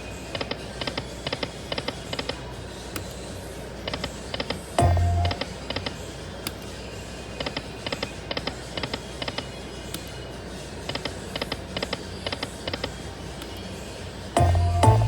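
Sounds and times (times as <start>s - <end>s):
slot machine reels ticking: 0.0s - 6.7s, 14.3s - 15.0s
casino background hum: 0.0s - 15.0s.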